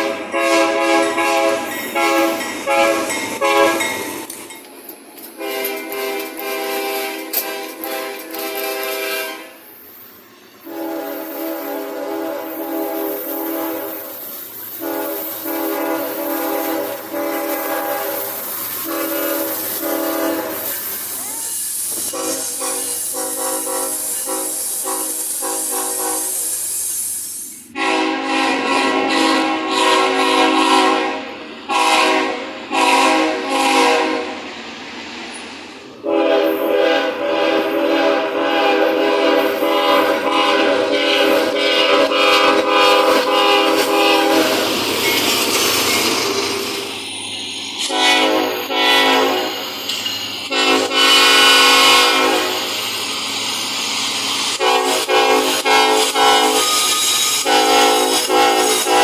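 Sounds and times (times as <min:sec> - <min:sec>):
locomotive air horn blasts: 0:00.0 - 0:04.0, 0:05.4 - 0:09.7, 0:10.6 - 0:26.6, 0:27.7 - 0:34.4, 0:36.0 - 0:44.8, 0:47.9 - 0:49.6, 0:50.5 - 0:52.7, 0:54.5 - 0:59.0
loud horn short toots: 0:54.6 - 0:59.0.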